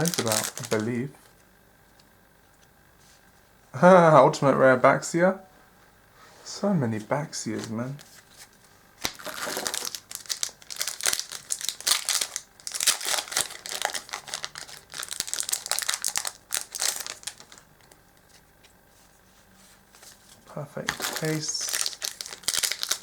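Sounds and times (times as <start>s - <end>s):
foil wrapper crinkling: 0.0s - 1.3s, 9.0s - 18.4s, 19.9s - 23.0s.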